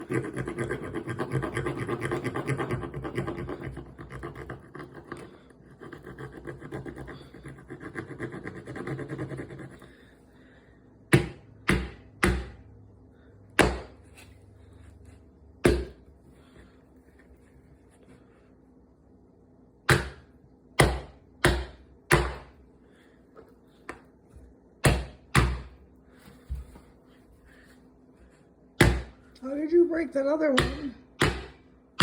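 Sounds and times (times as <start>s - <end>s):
sharp knocks on peach pit: 19.9s - 20.2s.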